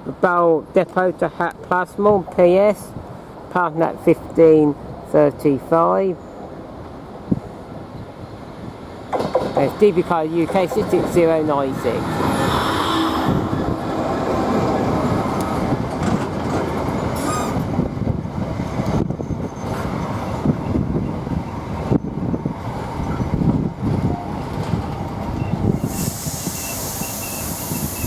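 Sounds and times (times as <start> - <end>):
freight train rumbling: 1.3 - 28.0
wheel squeal: 25.4 - 28.0.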